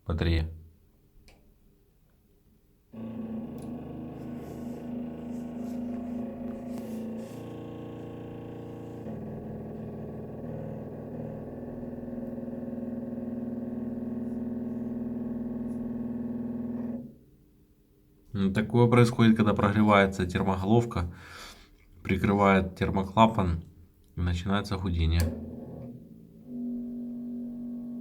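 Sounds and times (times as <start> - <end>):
radiator valve humming: 2.9 - 17.1.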